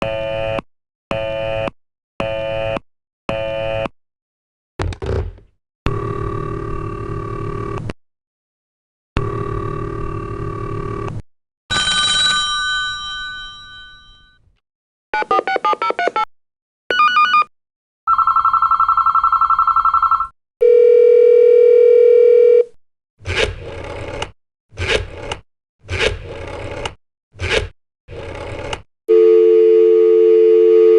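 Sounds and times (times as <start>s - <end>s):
telephone ringing tone: 11.7s - 14.4s, 18.1s - 22.7s, 29.1s - 30.9s
steady telephone tone: 18.1s - 22.7s, 29.1s - 30.9s.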